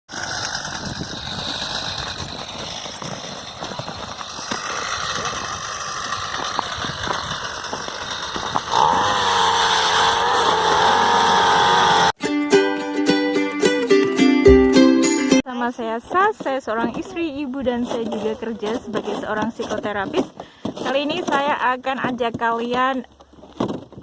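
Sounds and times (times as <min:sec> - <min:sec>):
small petrol engine running: 0:00.1 - 0:12.2
plucked-string music: 0:12.2 - 0:15.4.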